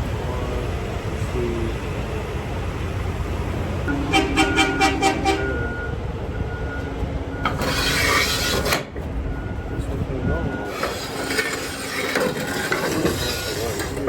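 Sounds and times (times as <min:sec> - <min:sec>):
heavy vehicle engine rumbling: 0:00.0 - 0:14.0
pitched horn toots: 0:03.9 - 0:06.0
backup alarm beeping: 0:03.9 - 0:07.6.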